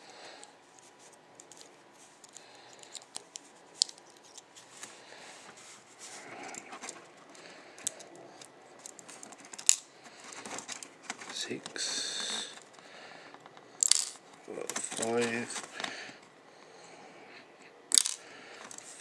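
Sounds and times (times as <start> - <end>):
small metal parts clicking: 1.4 - 4.5, 7.8 - 12.7, 13.8 - 15.6, 17.9 - 18.9.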